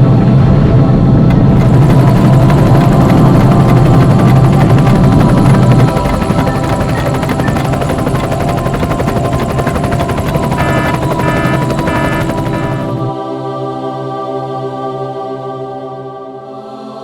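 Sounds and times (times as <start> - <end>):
fast mechanical rattle: 1.3 - 13.1.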